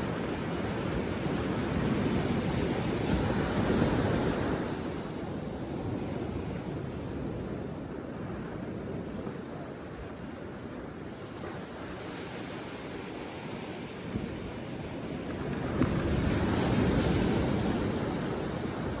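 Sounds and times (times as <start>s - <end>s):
ocean surf on a beach: 0.0s - 19.0s.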